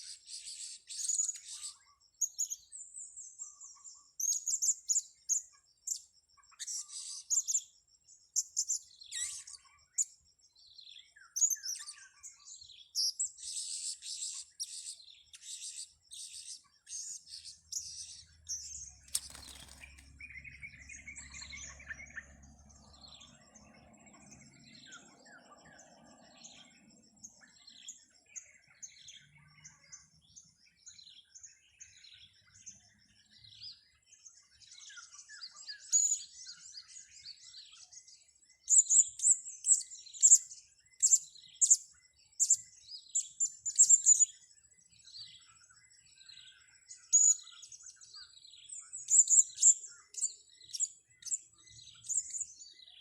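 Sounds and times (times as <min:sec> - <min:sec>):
sharp click: 0:19.1 - 0:20.0.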